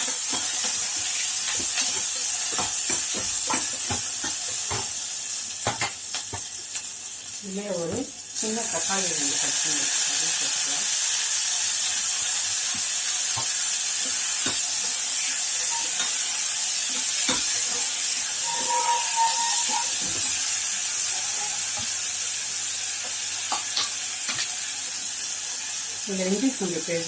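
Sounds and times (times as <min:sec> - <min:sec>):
spoon tapping and scraping pot: 0:00.0 - 0:05.0, 0:05.6 - 0:06.5, 0:15.6 - 0:20.5
onion sizzling in hot oil: 0:00.0 - 0:27.0.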